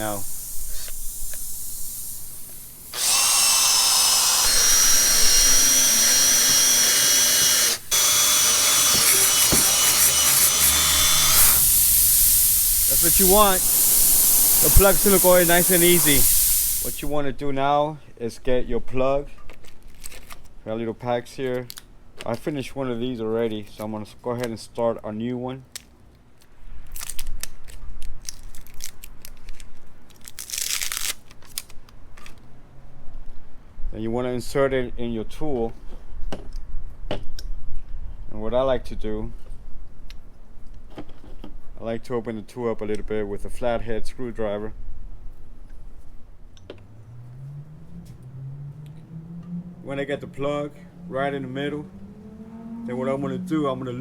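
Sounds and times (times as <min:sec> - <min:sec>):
power drill whining: 0:00.0 - 0:17.1
wrapper crinkling and clicking: 0:19.5 - 0:20.5, 0:26.9 - 0:32.4
packet tearing: 0:26.9 - 0:31.8.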